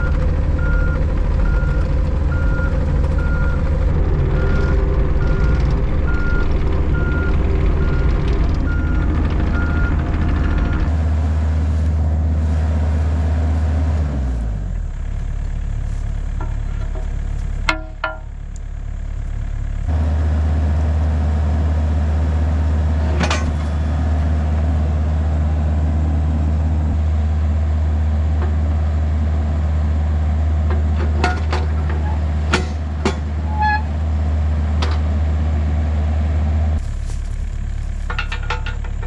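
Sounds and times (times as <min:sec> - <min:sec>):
excavator diesel engine running: 0:00.0 - 0:39.0
machine knocks and clanks: 0:16.4 - 0:18.4, 0:30.7 - 0:33.4, 0:37.9 - 0:39.0.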